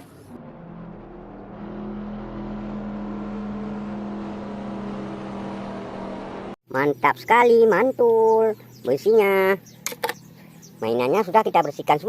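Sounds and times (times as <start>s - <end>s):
race car engine droning: 0.0s - 6.6s.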